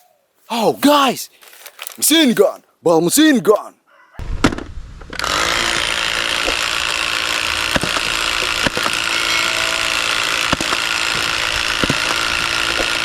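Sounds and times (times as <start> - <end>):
sharp mechanical clicks: 4.5 - 13.0
toy machine gun whirring: 5.1 - 13.0.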